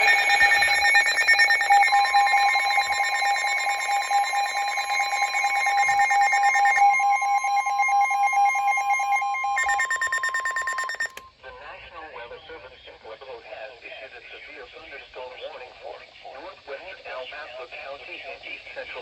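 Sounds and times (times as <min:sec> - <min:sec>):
fast repeating electronic pattern: 0:00.0 - 0:11.2
two-tone electronic alert signal: 0:00.0 - 0:11.2.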